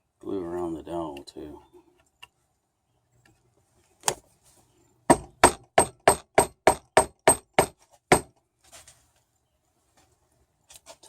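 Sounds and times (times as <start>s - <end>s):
hammer knocking wooden dowel: 5.1s - 8.3s.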